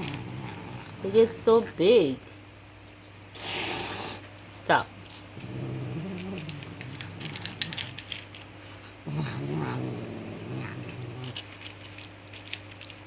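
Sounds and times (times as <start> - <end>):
cat growling yowl: 5.4 - 8.2, 9.0 - 11.4.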